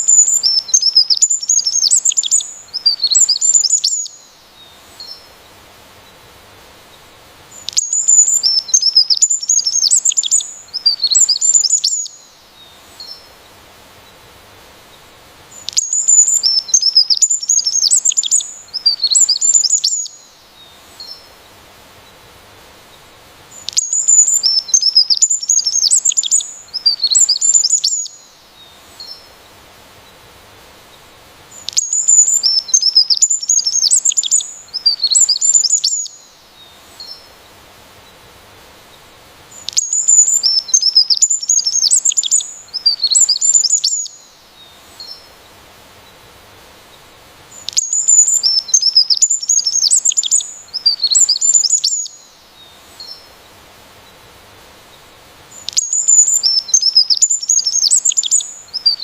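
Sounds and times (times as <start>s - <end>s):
songbird twittering: 0.0s - 5.3s, 7.5s - 13.3s, 15.5s - 21.3s, 23.5s - 29.3s, 31.5s - 37.3s, 39.5s - 45.3s, 47.5s - 53.3s, 55.5s - 59.0s.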